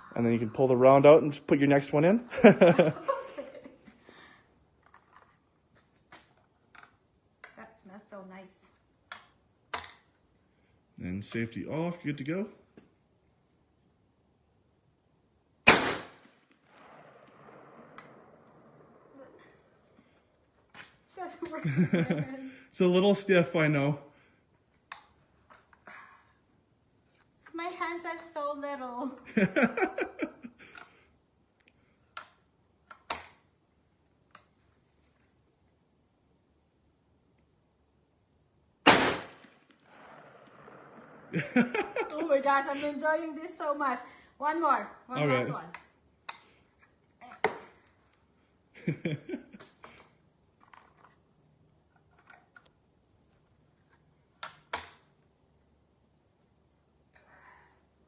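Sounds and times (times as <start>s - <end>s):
woman laughing: 2.4s - 4.0s, 21.5s - 22.6s, 29.2s - 30.6s, 41.4s - 43.0s.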